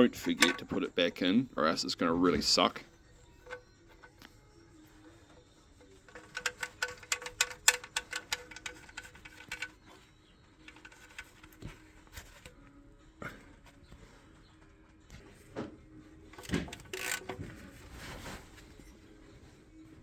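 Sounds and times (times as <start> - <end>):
clicks and knocks: 0.1 - 0.9, 6.1 - 9.8
socket wrench ratchet clicking: 6.1 - 9.8, 16.4 - 17.3.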